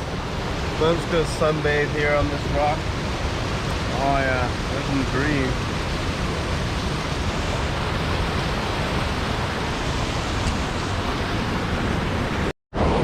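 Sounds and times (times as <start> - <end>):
water rushing over rocks: 0.0 - 13.0.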